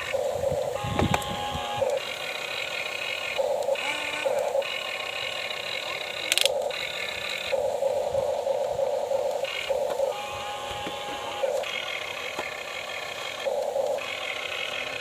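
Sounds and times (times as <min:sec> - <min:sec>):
small electric motors whining: 0:00.0 - 0:15.0
sharp click: 0:06.3 - 0:06.8.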